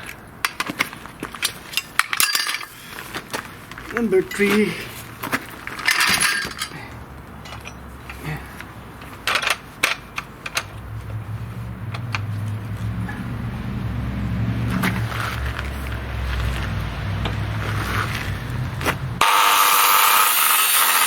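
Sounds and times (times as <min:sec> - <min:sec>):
steel pipe clinking and knocking: 0:01.3 - 0:02.8, 0:05.8 - 0:06.8, 0:07.4 - 0:08.2.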